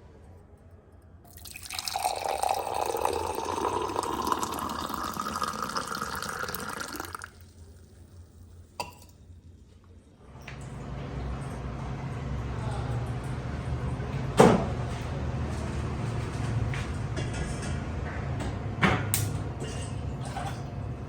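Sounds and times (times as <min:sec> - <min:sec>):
water pouring into vessel: 0:01.3 - 0:09.1.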